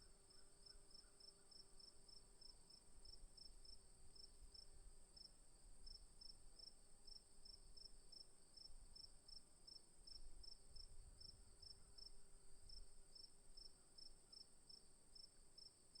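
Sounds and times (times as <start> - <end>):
cricket chirping steadily: 0.0 - 16.0.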